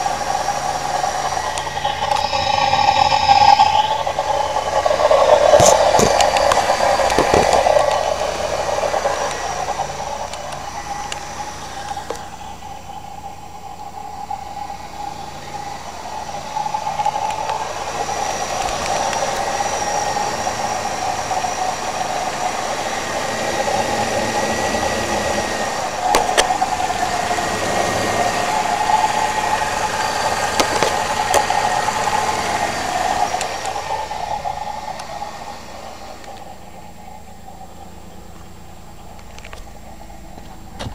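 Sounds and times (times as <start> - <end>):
sharp ticks: 0.0 - 20.4, 36.1 - 40.6
car engine idling: 0.0 - 40.9
whirring rattling bearing noise: 0.0 - 40.9.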